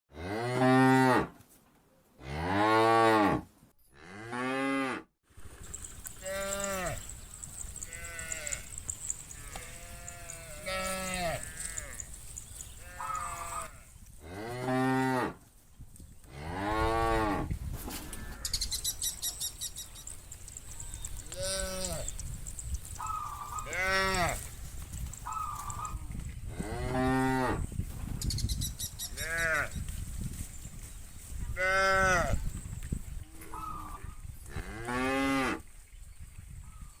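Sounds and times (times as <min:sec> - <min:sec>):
cattle mooing: 0:06.2 - 0:12.2, 0:12.8 - 0:13.8.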